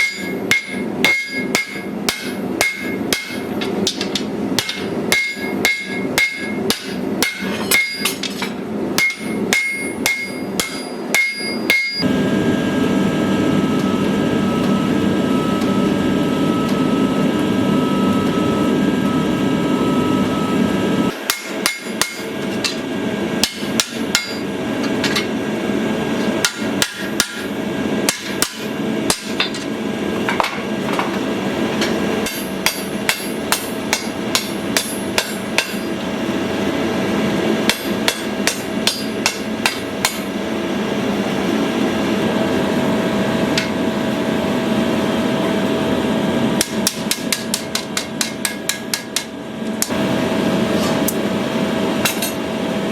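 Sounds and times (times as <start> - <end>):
hammer ringing on steel: 0.0 - 12.0, 21.1 - 22.8, 23.4 - 24.5, 26.4 - 27.5, 32.2 - 35.9, 37.7 - 40.3.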